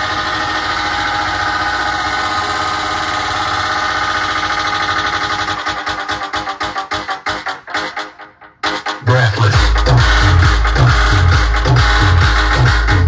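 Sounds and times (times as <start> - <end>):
loud buzzing synth tone: 0.0 - 5.9.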